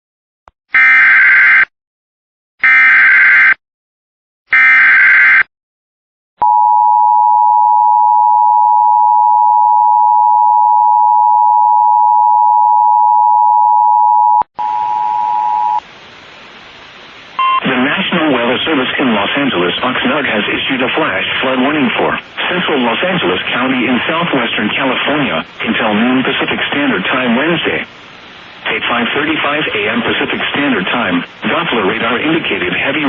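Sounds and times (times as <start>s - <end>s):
steady attention signal tone: 6.4s - 15.8s, 17.4s - 17.6s.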